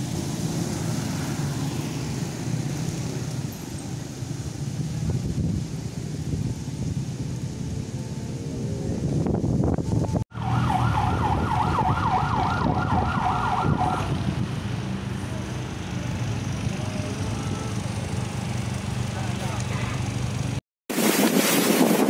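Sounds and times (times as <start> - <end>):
siren on fast yelp: 10.3 - 14.2.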